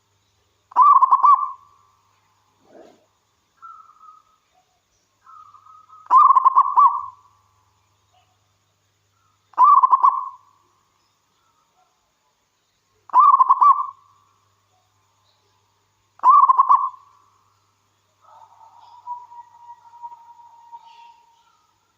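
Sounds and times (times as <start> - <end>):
dove cooing: 0.7 - 1.6, 2.6 - 4.0, 5.3 - 7.2, 9.6 - 10.4, 13.1 - 14.0, 16.2 - 17.0, 18.2 - 21.5.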